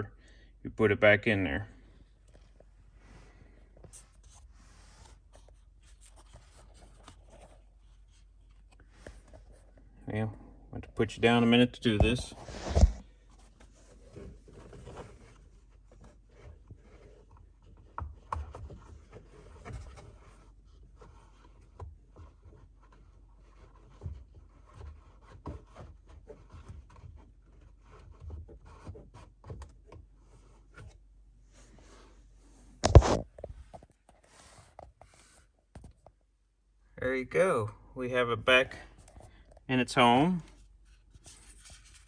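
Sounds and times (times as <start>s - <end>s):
filter rubbing and scraping in housing: 11.0s - 31.0s, 31.6s - 35.9s.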